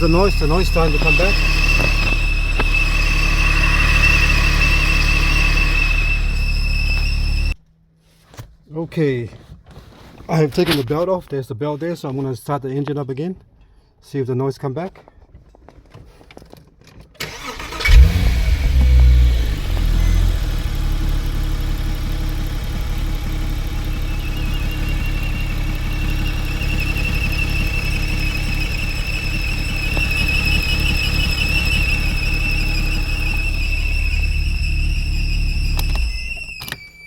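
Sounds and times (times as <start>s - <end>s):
car engine starting and idling: 0.0s - 7.6s, 17.2s - 36.7s
high-pitched whine: 0.0s - 7.6s, 17.9s - 36.7s.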